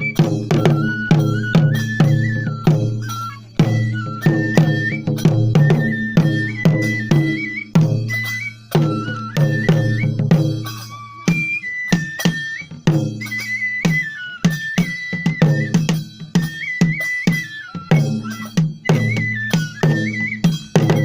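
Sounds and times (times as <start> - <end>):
drums struck in steady rhythm: 0.0 - 21.0
high flute melody: 0.0 - 21.0.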